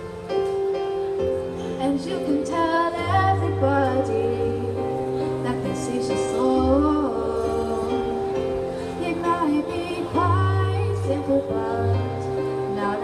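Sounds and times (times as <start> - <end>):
instrumental accompaniment: 0.0 - 13.0
woman singing: 1.8 - 13.0.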